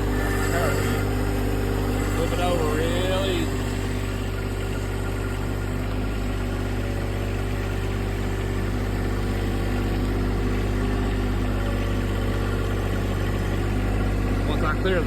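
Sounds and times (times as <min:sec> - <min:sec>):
tractor engine running: 0:00.0 - 0:15.0.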